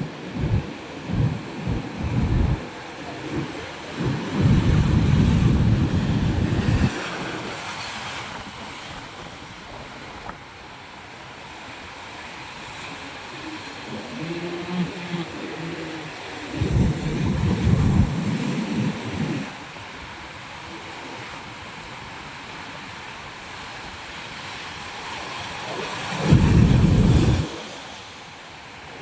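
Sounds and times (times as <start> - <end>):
wind buffeting microphone: 0.0 - 20.2, 25.7 - 27.7
ocean waves on rocky beach: 0.0 - 29.0.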